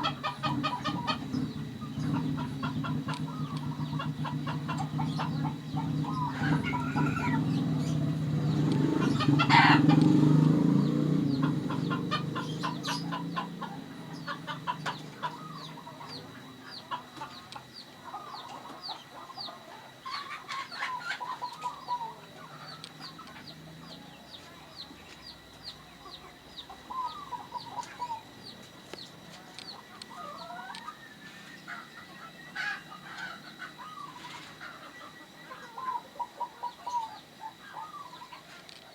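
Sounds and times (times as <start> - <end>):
loud low fowl call: 0.0 - 17.4
chickens clucking: 0.0 - 38.9
doves calling: 0.0 - 38.9.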